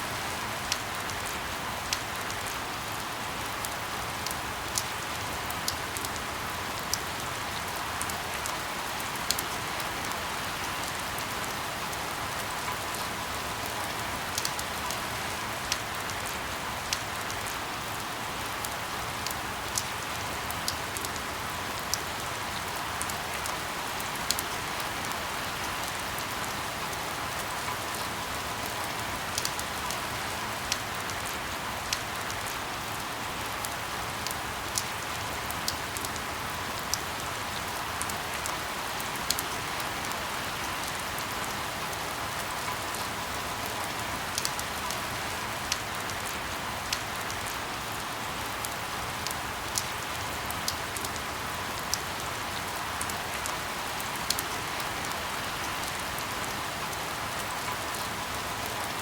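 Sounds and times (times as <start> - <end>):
steady rain falling: 0.0 - 59.0
rain drop ticks: 54.2 - 59.0.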